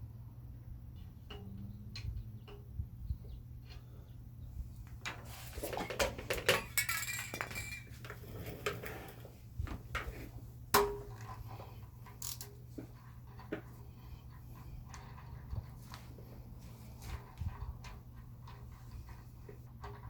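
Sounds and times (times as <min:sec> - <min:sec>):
steady low hum: 0:00.0 - 0:20.0
metal tools clinking: 0:05.2 - 0:08.9.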